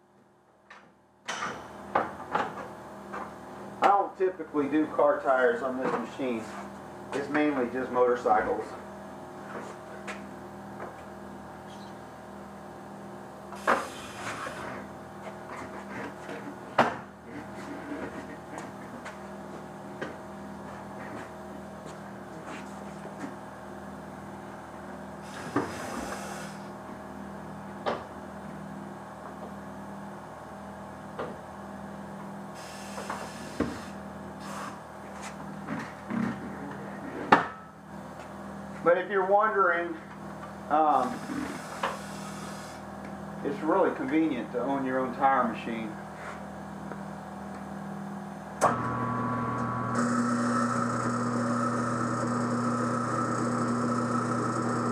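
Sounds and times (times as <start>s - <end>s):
air hiss bursts: 25.2s - 26.7s, 32.6s - 34.8s.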